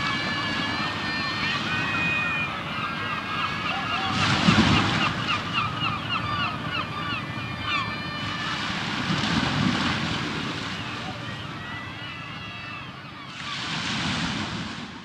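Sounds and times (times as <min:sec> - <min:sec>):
birds chirping: 0:00.2 - 0:08.7, 0:10.4 - 0:13.5
waves washing: 0:03.7 - 0:05.9, 0:08.4 - 0:12.3, 0:13.2 - 0:15.0.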